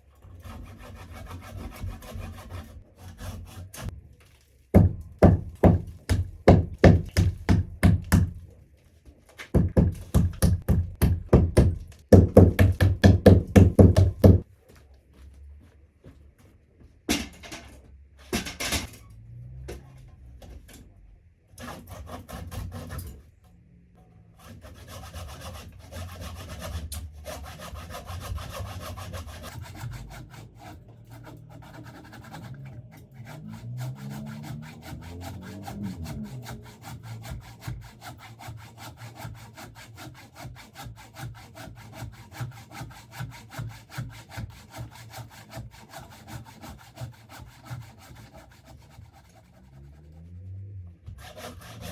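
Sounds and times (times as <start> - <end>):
handsaw cutting wood: 0.2 - 4.0, 4.8 - 8.5, 9.5 - 14.5, 21.6 - 23.2, 24.4 - 50.4, 51.1 - 51.9
sharp knocks: 4.8 - 8.4, 9.5 - 14.4.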